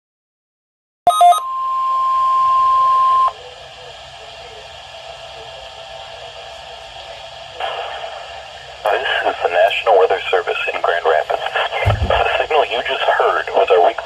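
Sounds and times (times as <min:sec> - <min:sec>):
low radio hiss: 0:03.3 - 0:14.0.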